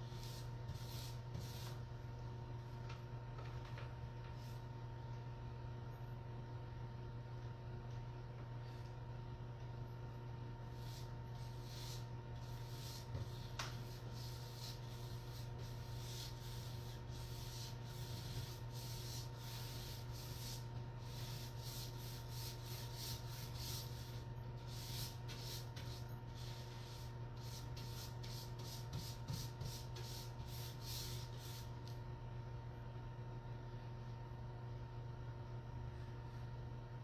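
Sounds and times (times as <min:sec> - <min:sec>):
paint roller swishing on wall: 0:00.0 - 0:01.8, 0:10.7 - 0:31.9
low electrical hum: 0:00.0 - 0:37.0.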